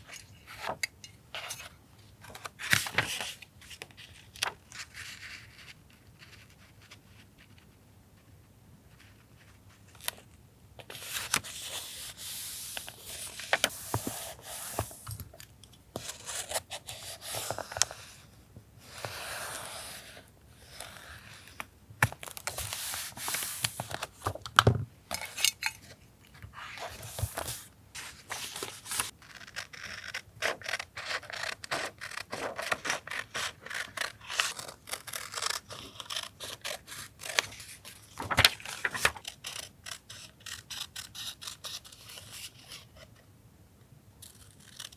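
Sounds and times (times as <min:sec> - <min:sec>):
paper scraping and tearing: 0:26.7 - 0:41.8.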